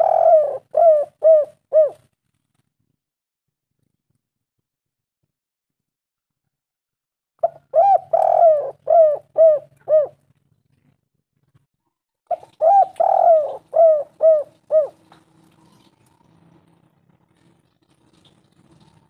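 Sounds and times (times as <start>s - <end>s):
dove cooing: 0.0s - 2.1s, 7.4s - 10.2s, 12.3s - 16.4s.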